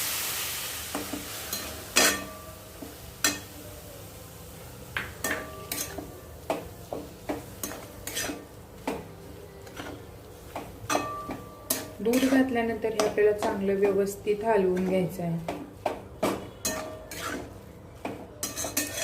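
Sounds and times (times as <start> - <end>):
milk sizzling: 0.0 - 11.2
metal spoon scraping a pan: 5.2 - 6.0, 7.6 - 8.5, 9.6 - 10.1, 10.9 - 15.2, 16.2 - 17.6, 18.4 - 19.0.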